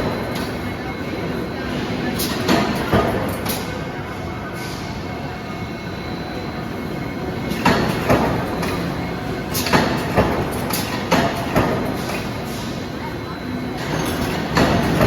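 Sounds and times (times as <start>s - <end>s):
factory machinery rumble: 0.0s - 15.0s
sharp knocks and clanks: 9.5s - 12.3s.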